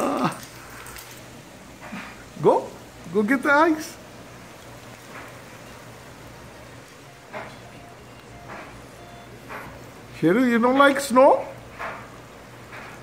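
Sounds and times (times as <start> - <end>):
hail and rain hissing: 0.0 - 6.9.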